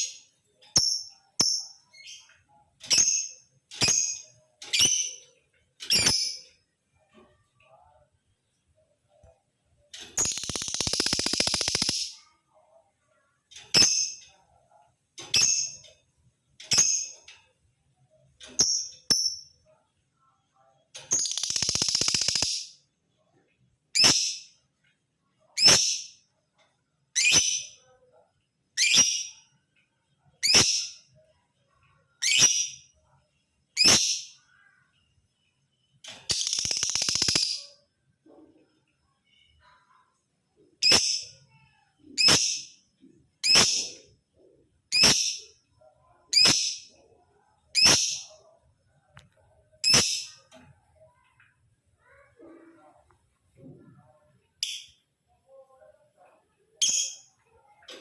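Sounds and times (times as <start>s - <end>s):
lovebird chirping and trilling: 5.8s - 6.5s, 10.2s - 12.2s, 21.1s - 22.8s, 28.8s - 29.4s, 30.4s - 31.0s, 32.2s - 32.8s, 36.2s - 37.8s, 40.8s - 41.3s, 42.2s - 42.8s, 43.4s - 44.0s, 44.9s - 45.5s, 46.3s - 46.9s, 47.8s - 48.3s, 49.8s - 50.4s, 54.6s - 55.0s, 56.8s - 57.3s.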